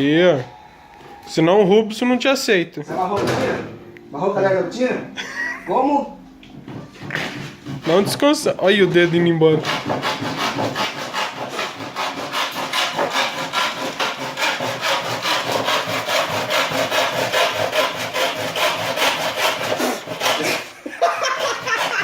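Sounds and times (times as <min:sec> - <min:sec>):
handsaw cutting wood: 0:07.3 - 0:22.0.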